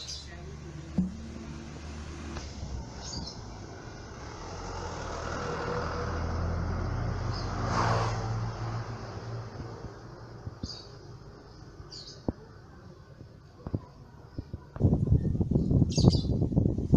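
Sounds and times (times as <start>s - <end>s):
vehicle engine passing by: 0.4s - 11.5s.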